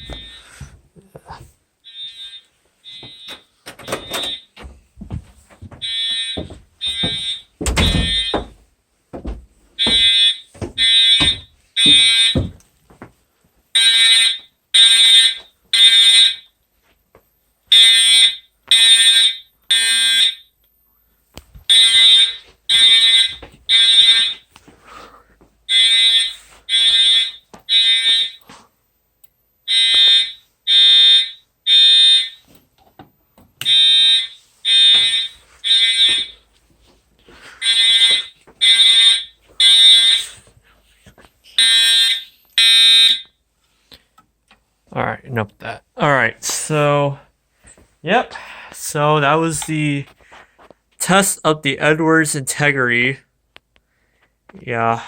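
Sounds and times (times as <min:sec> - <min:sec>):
fire alarm horn blasts: 0:00.0 - 0:00.4, 0:01.8 - 0:04.6, 0:05.8 - 0:08.5, 0:09.8 - 0:12.5, 0:13.7 - 0:16.6, 0:17.7 - 0:20.5, 0:21.7 - 0:24.5, 0:25.7 - 0:28.4, 0:29.6 - 0:32.5, 0:33.6 - 0:36.4, 0:37.6 - 0:40.5, 0:41.6 - 0:43.4
thumps and knocks: 0:03.0 - 0:13.2.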